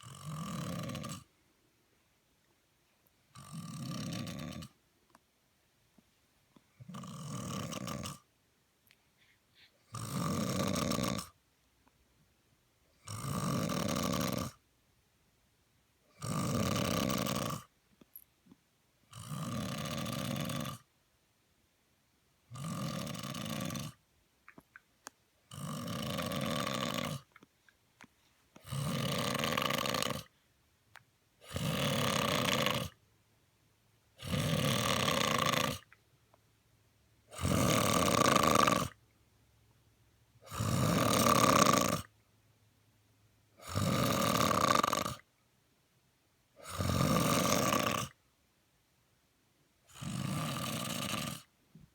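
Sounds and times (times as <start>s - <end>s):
man snoring: 0.0s - 1.3s, 3.4s - 4.7s, 6.9s - 8.2s, 9.9s - 11.4s, 13.0s - 14.6s, 16.2s - 17.7s, 19.1s - 20.8s, 22.5s - 24.0s, 25.5s - 27.3s, 28.6s - 30.3s, 31.4s - 33.0s, 34.2s - 35.8s, 37.3s - 39.0s, 40.4s - 42.1s, 43.6s - 45.2s, 46.6s - 48.2s, 49.9s - 51.5s.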